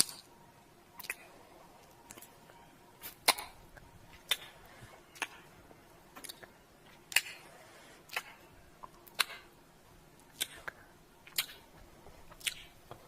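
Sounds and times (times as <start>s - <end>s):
lip kiss smacks: 10.3s - 11.6s, 12.4s - 12.7s.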